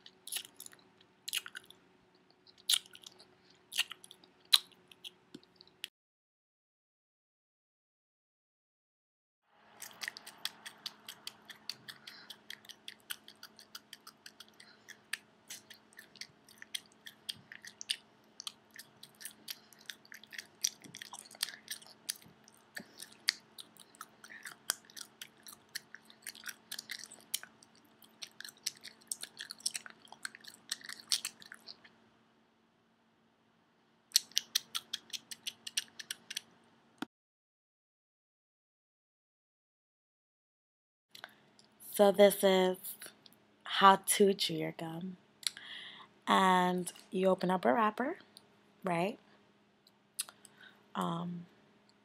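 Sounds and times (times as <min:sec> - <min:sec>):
gum chewing with wet smacking: 0:00.0 - 0:05.9, 0:09.8 - 0:32.0, 0:34.1 - 0:36.5, 0:50.2 - 0:50.6.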